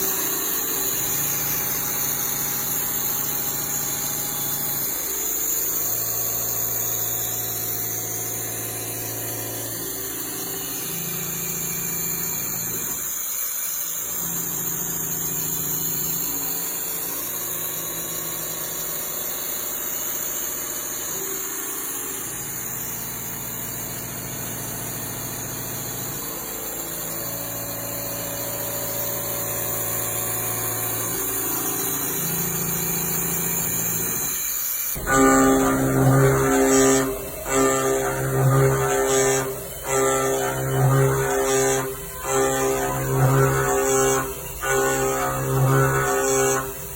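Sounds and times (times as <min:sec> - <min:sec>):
machine motor hum: 0:14.0 - 0:46.9.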